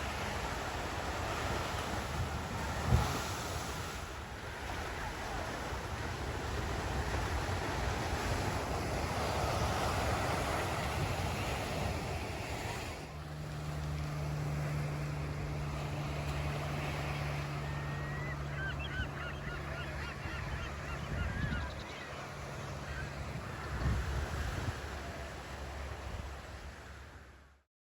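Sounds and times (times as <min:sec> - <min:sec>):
surf washing on beach: 0:00.0 - 0:27.5
gull calling: 0:16.9 - 0:24.5.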